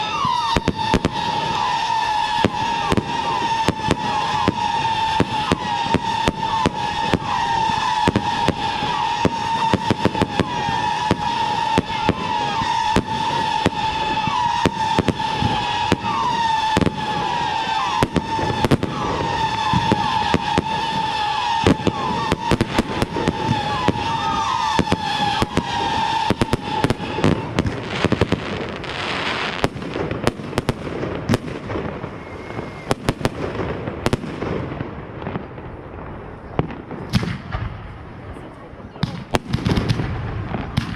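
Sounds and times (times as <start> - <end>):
high wavering whistle: 0.0 - 27.6, 32.0 - 33.0
fireworks bangs and crackles: 0.0 - 40.9.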